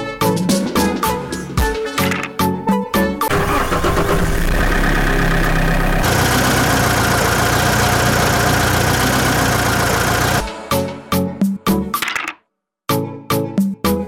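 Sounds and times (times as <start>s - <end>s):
engine idling: 3.3s - 10.5s.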